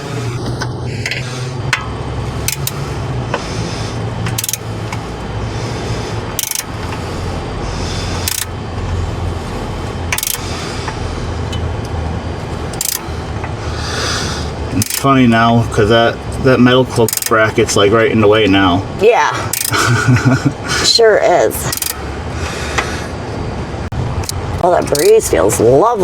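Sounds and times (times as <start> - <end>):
steady low rumble: 0.0 - 26.0
metallic clicks of hand tools: 0.6 - 2.8, 4.3 - 5.0, 6.4 - 7.0, 8.3 - 8.5, 10.1 - 10.4, 12.7 - 13.6, 14.8 - 15.1, 17.0 - 17.4, 19.5 - 19.8, 21.7 - 22.0.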